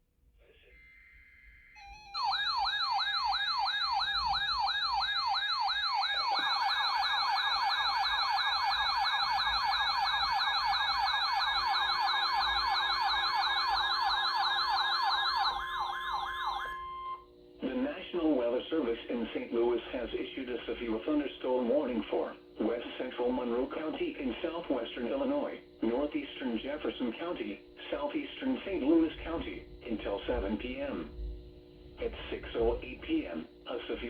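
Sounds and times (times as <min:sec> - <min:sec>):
electronic siren sweeping: 0:00.4 - 0:17.3.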